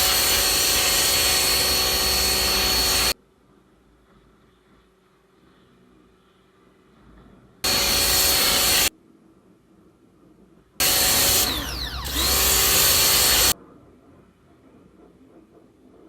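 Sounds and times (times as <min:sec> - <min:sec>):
pressure washer motor whine: 0:00.0 - 0:03.2, 0:07.6 - 0:08.9, 0:10.8 - 0:13.6.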